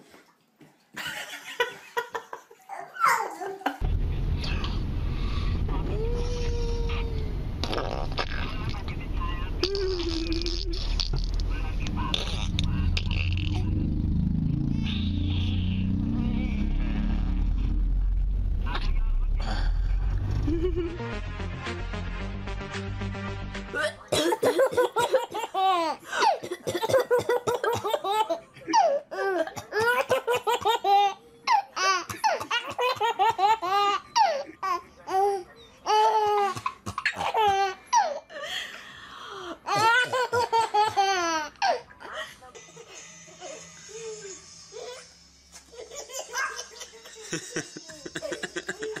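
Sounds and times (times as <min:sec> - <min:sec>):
baby laughing: 0:02.6 - 0:03.8, 0:24.5 - 0:26.4, 0:27.0 - 0:38.2, 0:39.7 - 0:41.8, 0:45.7 - 0:49.0.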